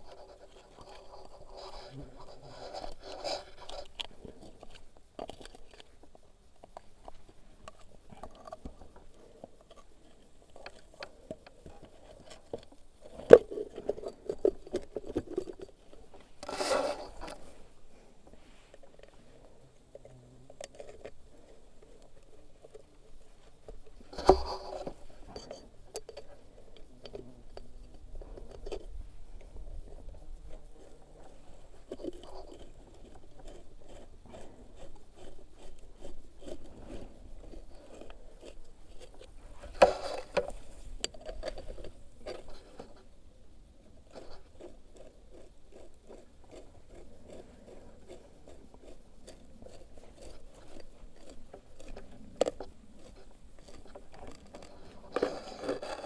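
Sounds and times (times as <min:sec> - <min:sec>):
scraping and handling noises: 0:00.0 - 0:43.2, 0:43.8 - 0:56.0.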